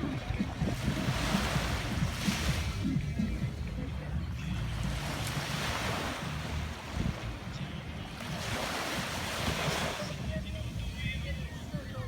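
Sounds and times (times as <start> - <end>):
ocean surf breaking: 0.0 - 3.3, 4.8 - 11.0
wind rumble on microphone: 0.0 - 12.0.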